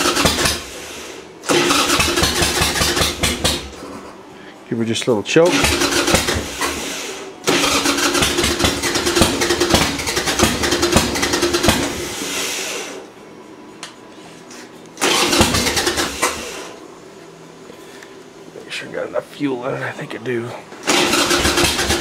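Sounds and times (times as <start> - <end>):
motorcycle engine cranking: 0.0 - 0.7, 1.5 - 4.0, 5.5 - 6.8, 7.5 - 12.0, 15.0 - 16.5, 20.8 - 22.0.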